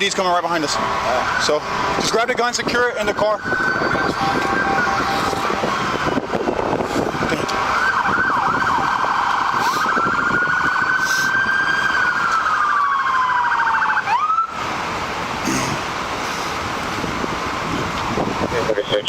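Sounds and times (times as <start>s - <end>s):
emergency vehicle siren wailing: 0.4s - 15.0s.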